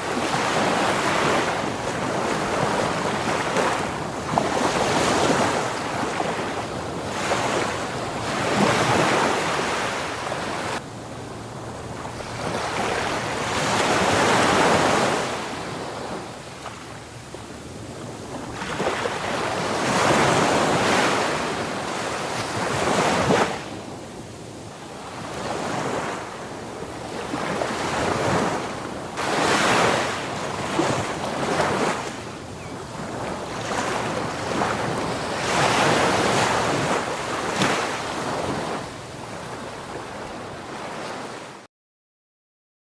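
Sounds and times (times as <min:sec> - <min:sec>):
ocean waves breaking on beach: 0:00.0 - 0:41.7.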